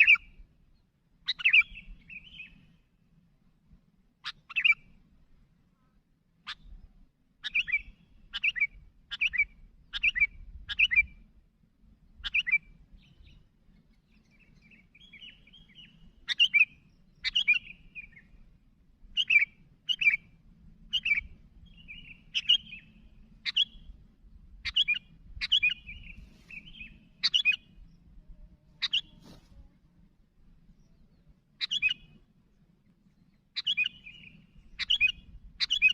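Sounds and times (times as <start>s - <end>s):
bird chirping: 0.0s - 2.9s, 4.2s - 5.0s, 6.4s - 11.2s, 12.1s - 29.7s, 30.6s - 35.9s
soft warbled bird phrases: 4.2s - 5.0s, 5.6s - 11.1s, 20.9s - 23.9s, 24.5s - 30.1s, 30.7s - 32.2s.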